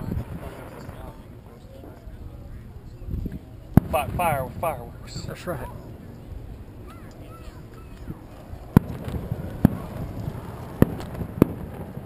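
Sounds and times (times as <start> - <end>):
fireworks bangs: 3.8 - 4.4, 8.6 - 12.0.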